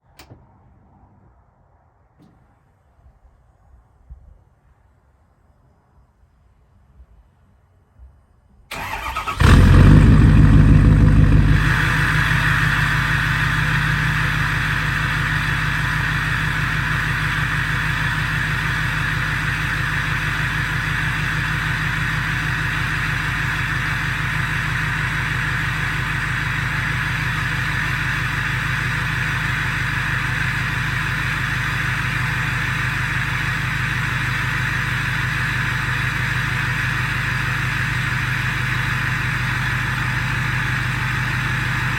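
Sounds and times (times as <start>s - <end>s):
diesel truck engine starting and idling: 8.7s - 41.9s.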